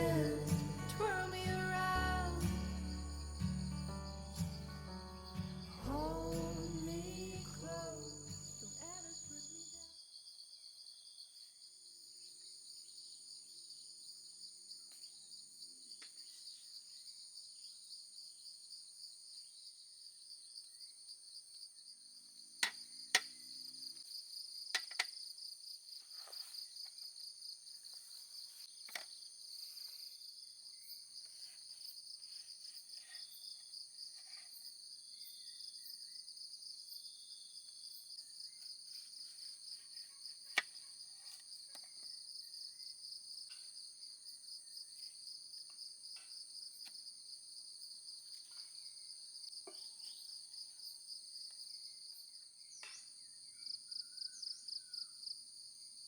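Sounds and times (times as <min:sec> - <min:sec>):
crickets chirring: 0:00.0 - 0:09.9.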